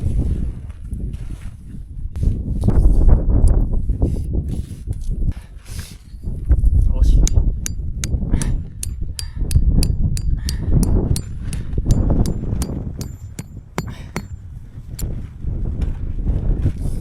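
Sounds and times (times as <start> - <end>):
wind rumble on microphone: 0.0 - 17.0
hammer striking metal tent stakes: 7.2 - 14.5.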